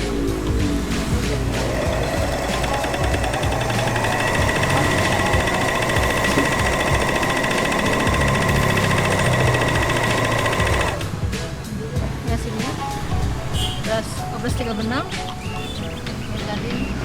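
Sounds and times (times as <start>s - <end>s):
overlock machine sewing: 1.2s - 11.1s.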